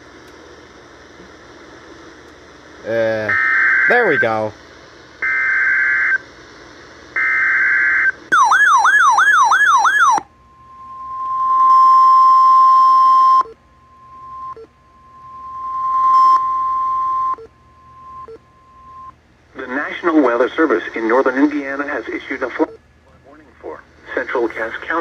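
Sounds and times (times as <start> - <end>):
harsh buzzing data bursts: 2.8 - 4.6
steady alarm tone: 3.3 - 4.5, 5.2 - 6.2, 7.2 - 19.1.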